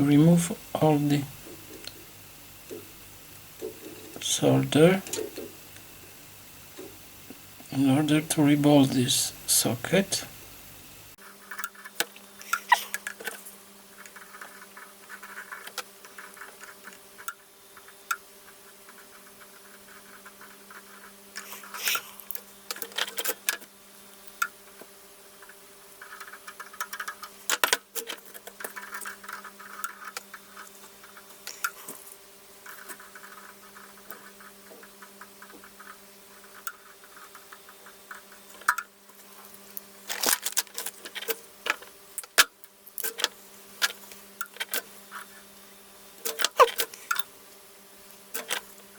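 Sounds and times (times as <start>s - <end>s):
steady low hum: 0.0s - 11.4s
scratching and clicking of tools: 39.5s - 45.4s.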